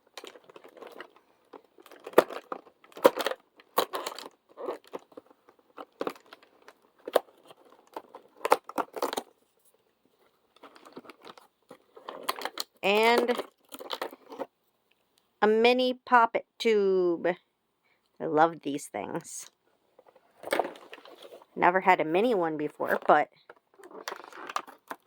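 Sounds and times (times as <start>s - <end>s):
wrapping crinkling: 0.0s - 14.5s, 20.0s - 21.6s, 22.7s - 25.0s.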